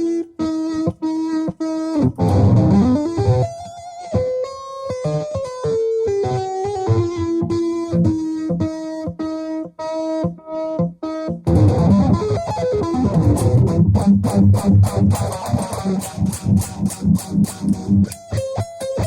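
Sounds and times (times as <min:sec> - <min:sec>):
electric guitar shredding: 0:00.0 - 0:03.7, 0:11.5 - 0:19.0.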